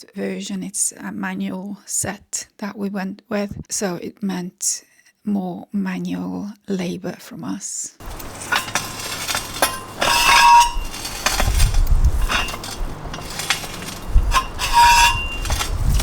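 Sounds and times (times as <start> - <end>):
metal clinks and scrapes: 8.0 - 16.0
ringing metal scrapes: 8.0 - 16.0
wind buffeting microphone: 10.6 - 16.0.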